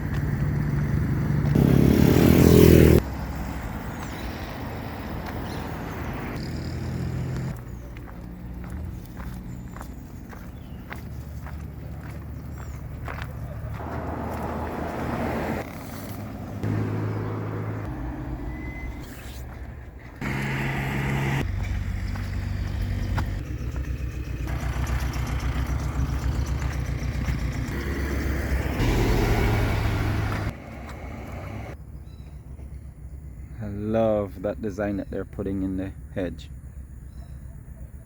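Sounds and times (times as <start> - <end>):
vehicle engine hum: 0.0 - 38.0
road noise hiss: 11.0 - 23.0, 23.8 - 31.8.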